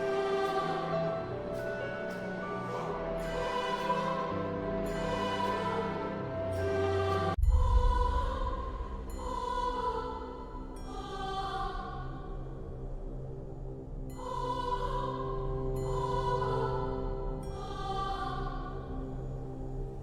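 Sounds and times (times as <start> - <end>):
shimmering chord: 0.0 - 7.4
choir-like tones: 0.0 - 13.4, 14.0 - 20.0
low drone: 0.0 - 20.0.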